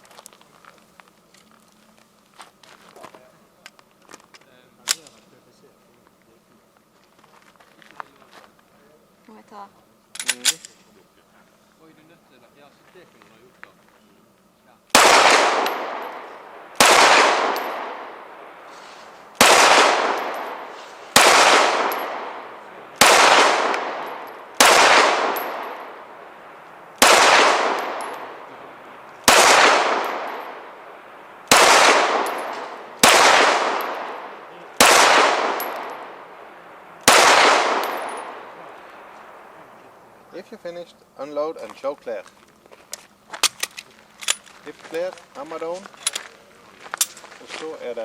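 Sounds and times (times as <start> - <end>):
pistol shots with echo: 14.9 - 18.7, 19.3 - 39.8.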